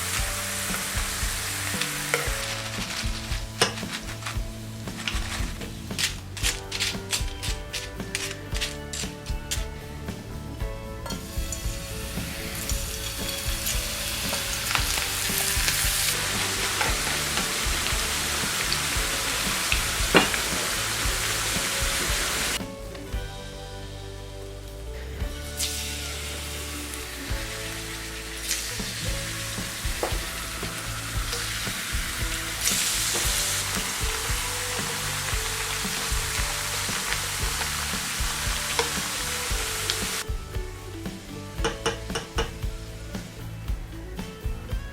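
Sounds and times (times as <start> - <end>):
food sizzling in a pan: 0.0 - 4.3, 12.0 - 22.6, 25.5 - 40.2
vegetables deep-frying in oil: 0.0 - 5.8, 12.4 - 22.6, 25.5 - 40.2.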